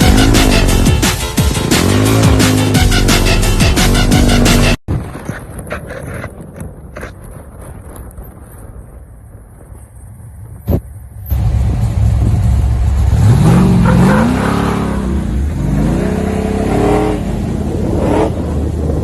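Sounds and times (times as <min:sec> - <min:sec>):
vehicle engine revving hard: 0:00.0 - 0:04.8, 0:13.0 - 0:19.0.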